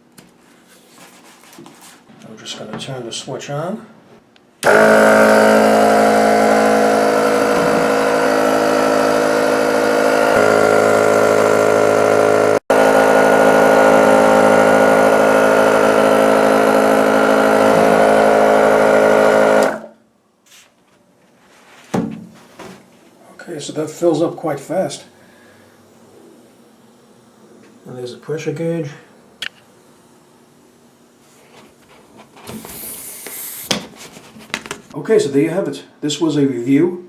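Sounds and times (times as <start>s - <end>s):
air compressor motor drone: 4.6s - 20.0s.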